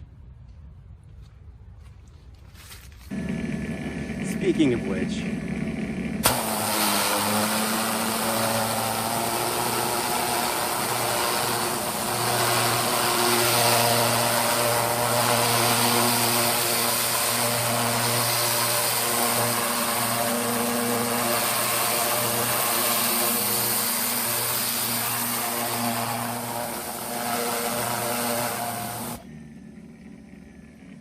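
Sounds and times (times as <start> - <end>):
pressure washer motor hum: 3.1 - 29.2
water jet hissing on siding: 6.2 - 29.2.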